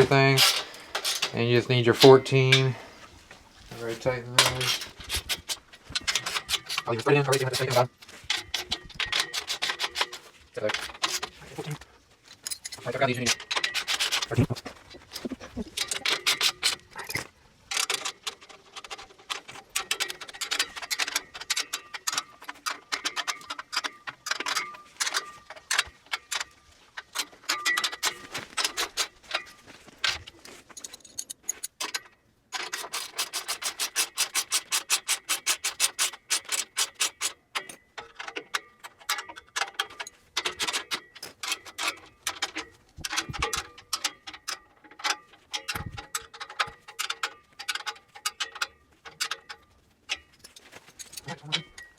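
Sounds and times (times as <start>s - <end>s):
socket ratchet clicking: 32.6s - 37.8s.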